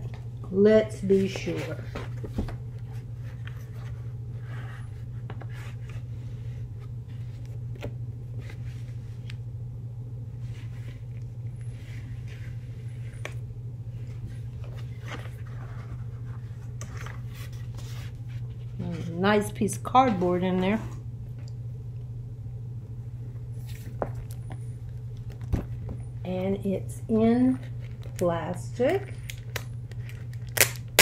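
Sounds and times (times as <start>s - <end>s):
steady low hum: 0.0s - 31.0s
cardboard scraping and scratching: 14.1s - 19.2s.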